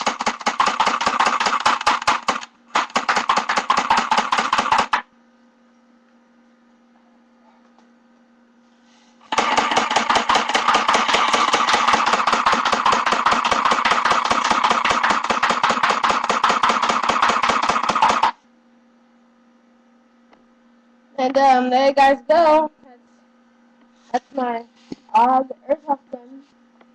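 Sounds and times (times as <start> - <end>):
airsoft gun firing full auto: 0.0 - 5.0, 9.3 - 18.4
faint hum: 0.0 - 26.9.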